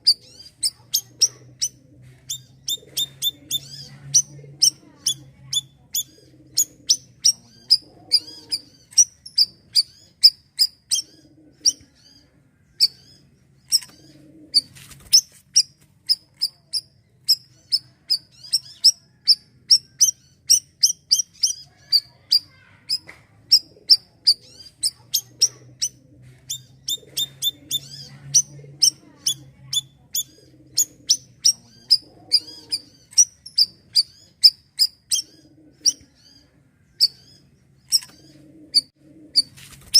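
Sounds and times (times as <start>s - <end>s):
songbird chirping: 0.0s - 39.9s.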